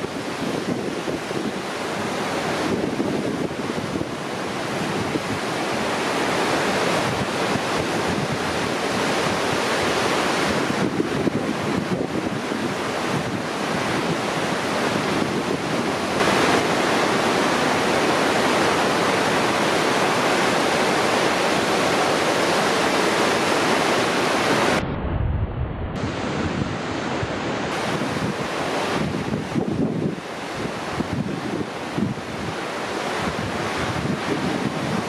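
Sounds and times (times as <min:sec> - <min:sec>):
lake waves breaking: 0:00.0 - 0:24.8, 0:26.0 - 0:35.0
wind blowing across microphone: 0:00.0 - 0:35.0.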